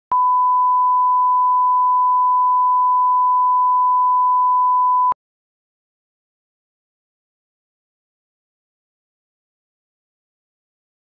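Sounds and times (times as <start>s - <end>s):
sine-wave reference tone: 0.1s - 5.2s.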